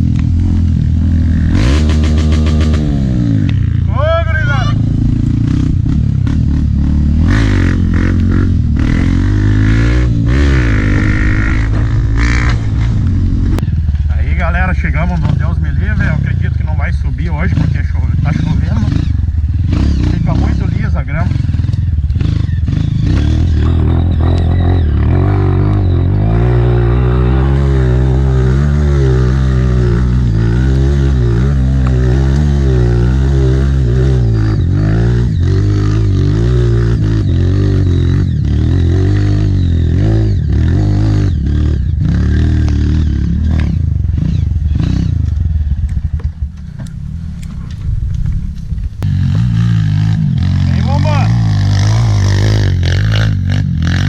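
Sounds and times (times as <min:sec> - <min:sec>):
dirt bike engine revving: 0:00.0 - 0:54.0
high whine: 0:06.2 - 0:21.1.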